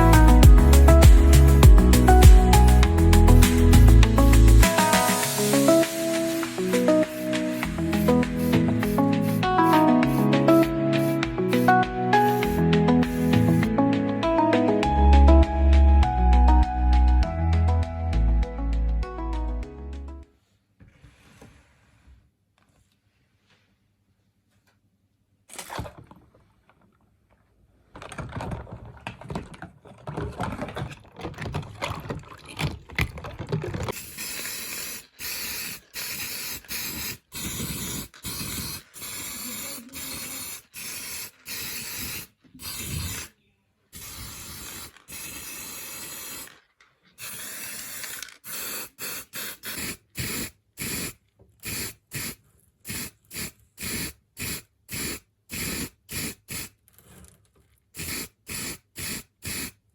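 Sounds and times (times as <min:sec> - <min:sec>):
hissing spray bursts: 0:00.0 - 0:13.7, 0:34.0 - 0:43.3, 0:44.0 - 0:46.5, 0:47.2 - 0:56.7, 0:58.0 - 0:59.8.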